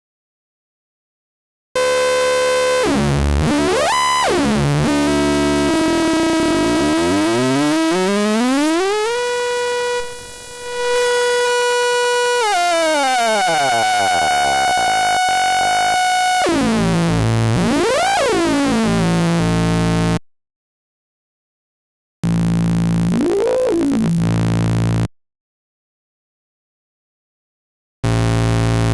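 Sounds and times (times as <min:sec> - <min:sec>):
buzzy synthesizer tone: 0:01.8 - 0:20.2.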